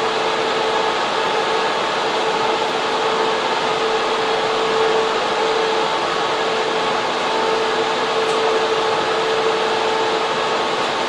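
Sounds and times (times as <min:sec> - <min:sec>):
constant hum: 0:00.0 - 0:11.0
cooling fans rushing air: 0:00.0 - 0:11.0.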